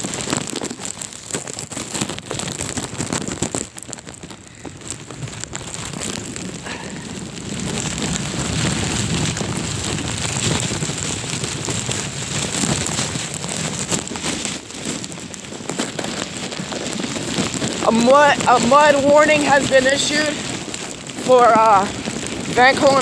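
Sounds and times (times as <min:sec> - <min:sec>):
heavy rain pouring: 0:00.0 - 0:23.0
wind buffeting microphone: 0:00.0 - 0:23.0.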